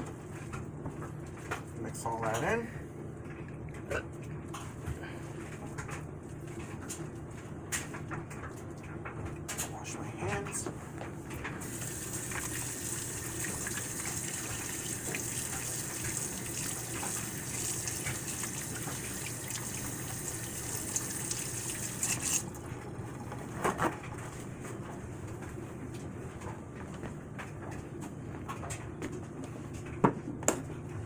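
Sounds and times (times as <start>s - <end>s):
hands washed under water: 11.6s - 24.4s
kitchen tap running: 11.6s - 24.7s.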